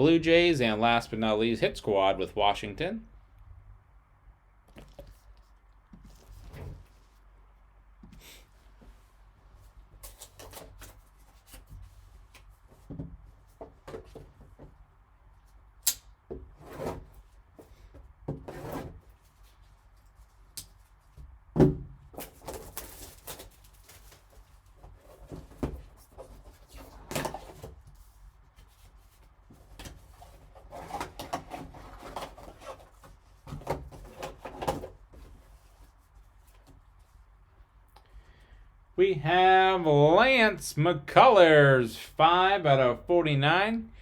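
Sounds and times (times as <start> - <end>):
cardboard and plastic scraping: 4.7 - 7.2, 16.3 - 20.4, 21.6 - 36.8.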